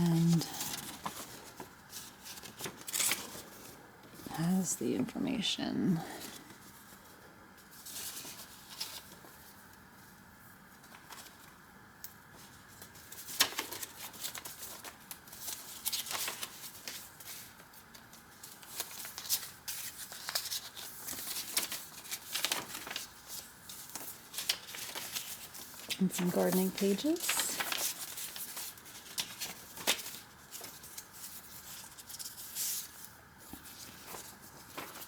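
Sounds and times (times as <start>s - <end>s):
paper pages rustling: 0.0s - 4.3s, 6.2s - 10.2s, 10.8s - 11.6s, 12.4s - 35.0s.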